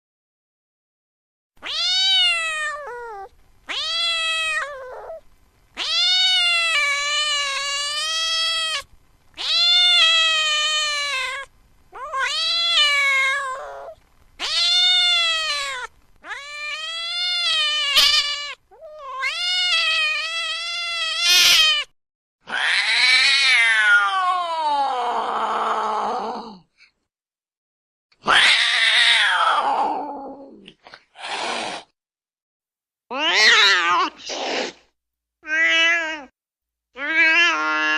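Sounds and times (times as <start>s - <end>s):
cat yowling: 1.6s - 5.2s, 5.8s - 21.9s, 22.5s - 26.3s, 28.2s - 30.6s, 33.1s - 34.3s, 35.4s - 36.4s, 37.0s - 37.9s.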